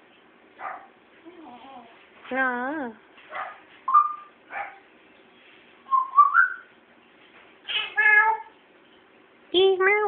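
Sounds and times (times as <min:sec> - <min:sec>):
cat chirping: 0:07.7 - 0:08.5.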